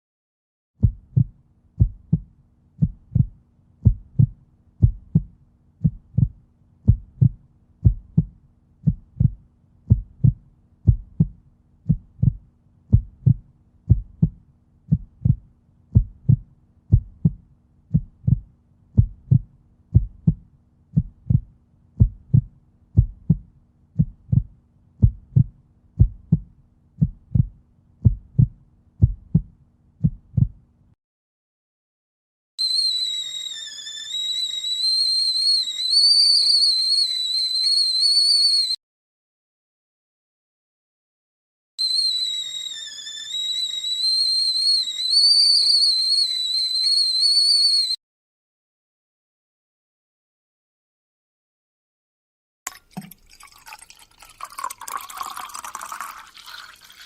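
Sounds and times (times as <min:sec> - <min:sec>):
dull low double thumps: 0:00.8 - 0:30.6.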